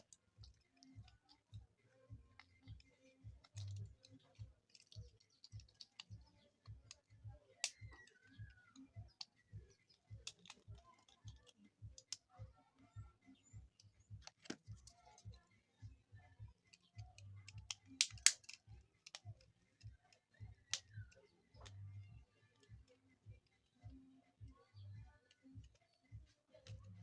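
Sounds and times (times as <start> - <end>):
plastic phone parts clicking: 2.3 - 12.3, 13.7 - 15.2, 16.6 - 21.7.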